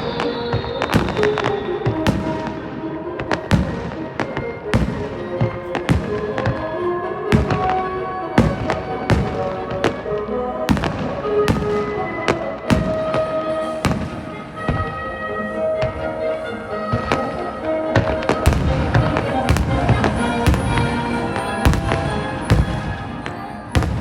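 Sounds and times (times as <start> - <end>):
fireworks bursting: 0.0 - 24.0
music with held notes: 0.0 - 24.0.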